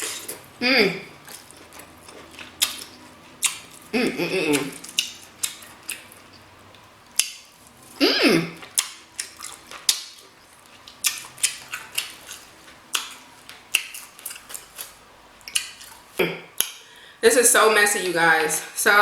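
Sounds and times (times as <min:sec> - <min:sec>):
person humming: 0:00.6 - 0:01.1, 0:03.9 - 0:04.8
wet smacking and chewing: 0:01.2 - 0:07.8, 0:08.6 - 0:16.8.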